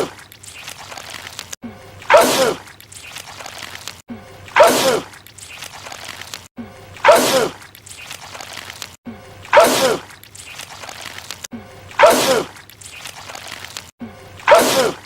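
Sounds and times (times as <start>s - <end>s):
man sneezing loudly: 12.0s - 12.5s, 14.5s - 15.0s.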